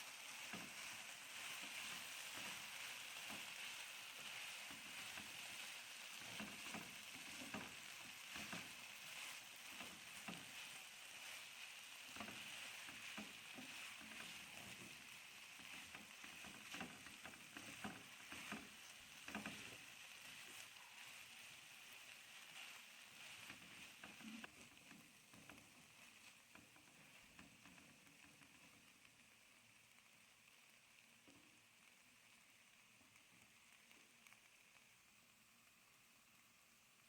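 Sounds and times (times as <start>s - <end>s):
utensil stirring knocks: 0.0s - 28.8s
meat sizzling in a pan: 0.0s - 37.0s.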